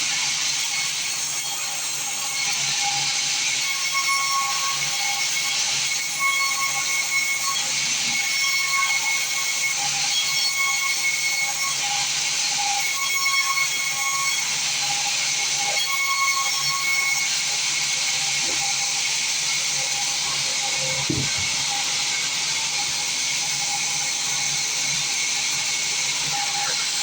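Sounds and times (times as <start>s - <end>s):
bandsaw running: 16.6s - 27.0s.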